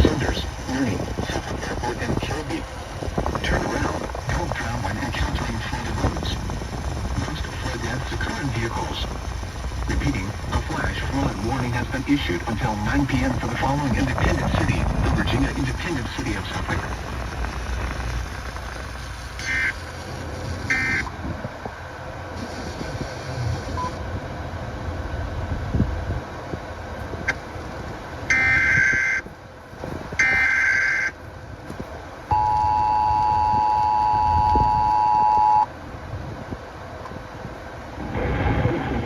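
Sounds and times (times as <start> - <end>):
warbling data bursts: 3.4 - 21.1, 28.3 - 29.3
two-tone attention signal: 28.3 - 29.2, 30.2 - 31.1, 32.3 - 35.7.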